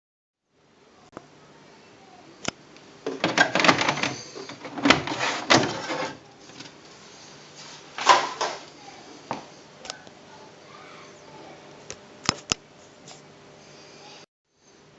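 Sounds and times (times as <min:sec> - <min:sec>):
electronic typewriter clattering: 0:03.1 - 0:06.2.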